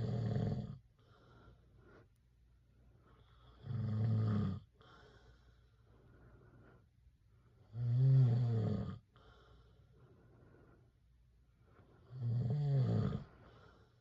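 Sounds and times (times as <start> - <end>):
man snoring: 0.0 - 0.8, 3.4 - 4.9, 7.7 - 9.0, 12.0 - 13.3
faint breathing: 0.8 - 3.8, 4.6 - 7.7, 9.0 - 12.2, 13.1 - 14.0.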